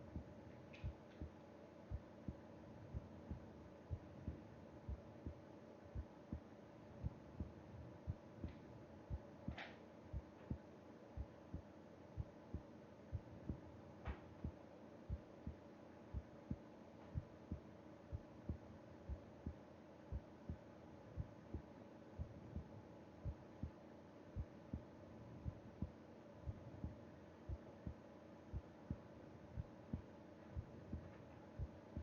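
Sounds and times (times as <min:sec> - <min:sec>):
heartbeat thumps: 0:00.0 - 0:10.6, 0:11.2 - 0:20.6, 0:21.2 - 0:23.8, 0:24.4 - 0:32.0
faint steady hum: 0:00.0 - 0:32.0.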